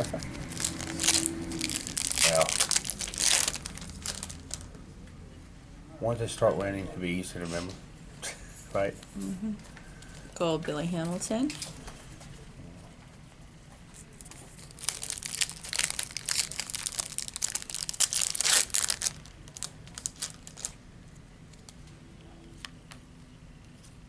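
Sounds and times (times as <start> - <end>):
foil wrapper tearing and crinkling: 0.0 - 4.7, 14.5 - 20.8.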